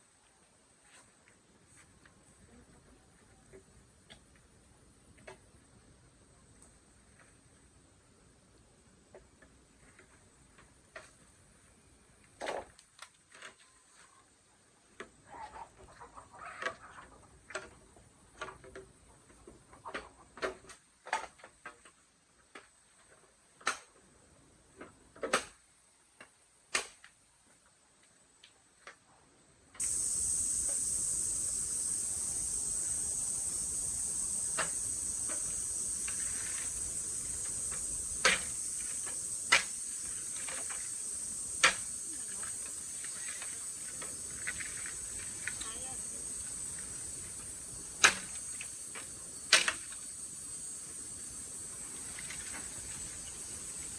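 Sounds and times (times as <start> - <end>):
high insect drone: 29.8 - 53.9.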